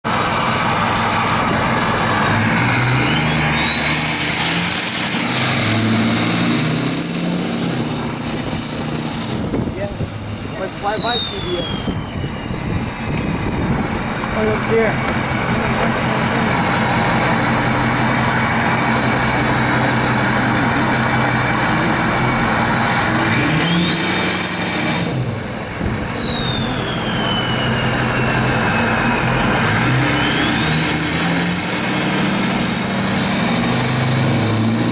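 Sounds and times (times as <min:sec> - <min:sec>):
diesel engine accelerating: 0:00.0 - 0:34.9
turbo whistle: 0:02.9 - 0:13.2, 0:23.5 - 0:34.9.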